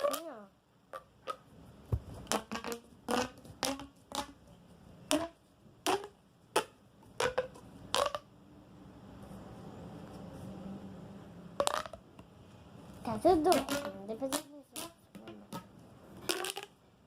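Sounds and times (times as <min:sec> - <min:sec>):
silicone fidget toy popping: 0:00.0 - 0:08.3, 0:11.6 - 0:12.1, 0:13.4 - 0:16.8.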